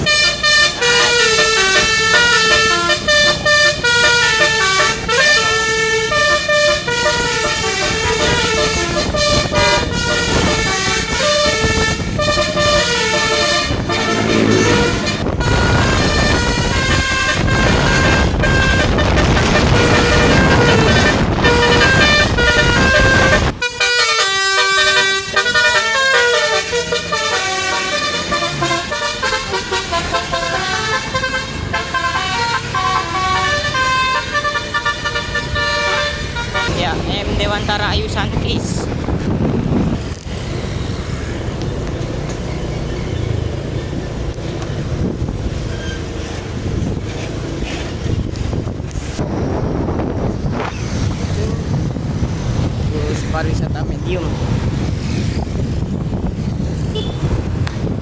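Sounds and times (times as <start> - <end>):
musical bus horn playing tunes: 0.0 - 37.0, 56.9 - 57.4
engine and road noise: 0.0 - 58.0.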